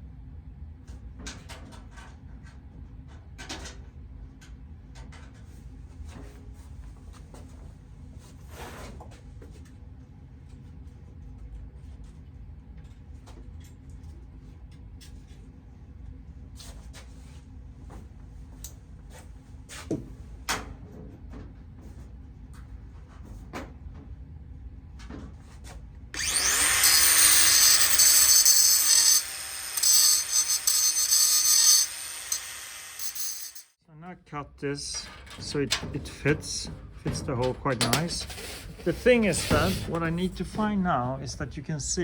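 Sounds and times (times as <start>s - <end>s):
angle grinder cutting steel: 26.2s - 33.7s.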